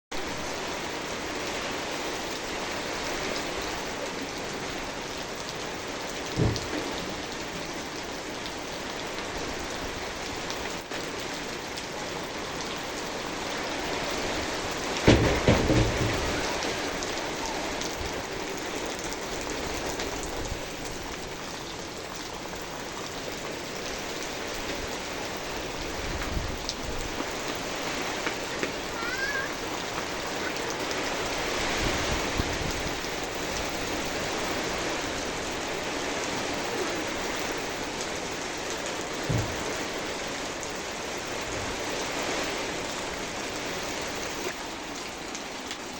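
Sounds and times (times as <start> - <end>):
steady rain: 0.1 - 45.9
thunder rumble: 13.8 - 21.2.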